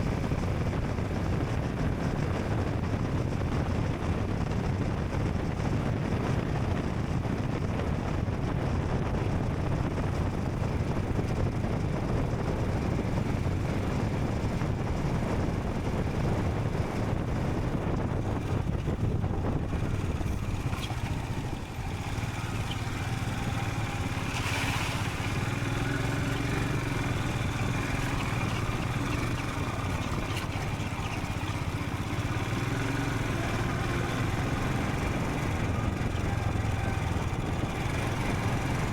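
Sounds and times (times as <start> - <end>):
wind and road noise: 0.0 - 38.9
motorcycle engine thrumming: 14.7 - 38.9.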